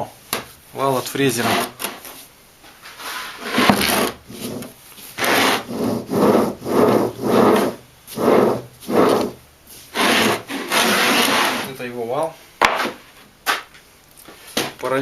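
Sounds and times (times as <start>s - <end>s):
rhythmic scraping strokes: 3.0s - 11.8s.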